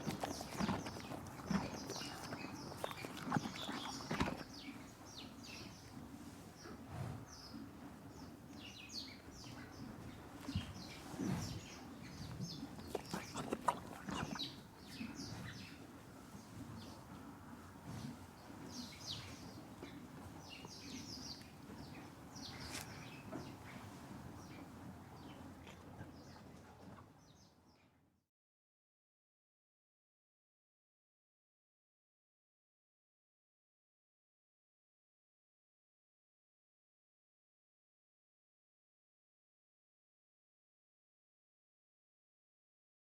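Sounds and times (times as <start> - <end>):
small birds chirping: 0.0 - 6.0, 6.6 - 17.2, 18.4 - 27.9
horse chewing hay: 0.0 - 8.0, 10.1 - 27.0.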